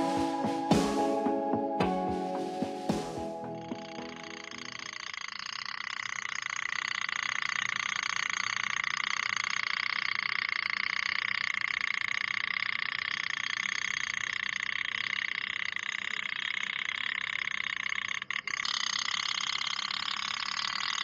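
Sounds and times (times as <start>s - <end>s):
toy steam boat engine popping: 4.5s - 21.0s.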